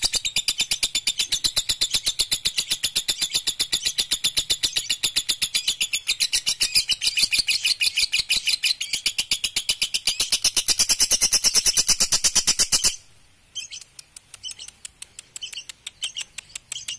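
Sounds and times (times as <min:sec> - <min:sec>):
faint bird chirps: 0:00.0 - 0:16.9
lovebird chattering trill: 0:00.0 - 0:16.9.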